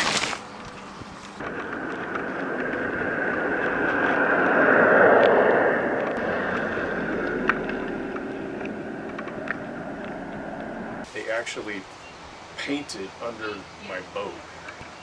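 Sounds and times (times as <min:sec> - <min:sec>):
faint clicks: 0:00.6 - 0:11.1
vehicle driving past: 0:01.4 - 0:11.1.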